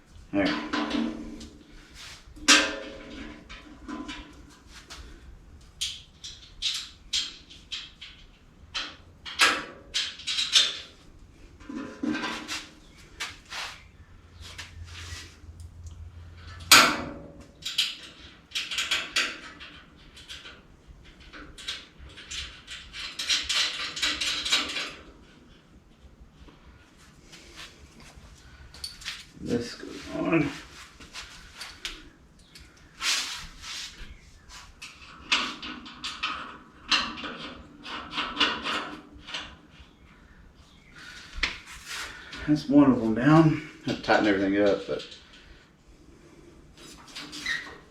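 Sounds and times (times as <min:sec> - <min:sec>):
metal tools clanking and rattling: 0:05.8 - 0:25.1.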